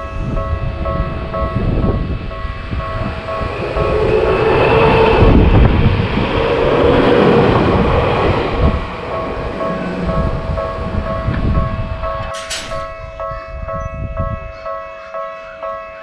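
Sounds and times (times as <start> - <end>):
crossing warning bell ringing: 0.0 - 5.6, 9.0 - 16.0
train running noise: 0.0 - 16.0.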